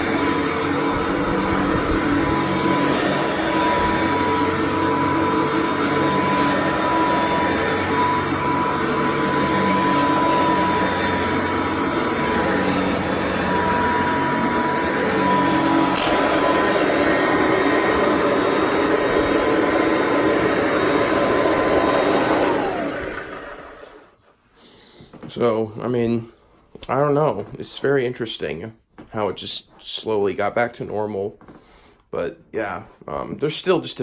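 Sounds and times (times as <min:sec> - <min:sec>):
upright vacuum running on carpet: 0:00.0 - 0:24.2.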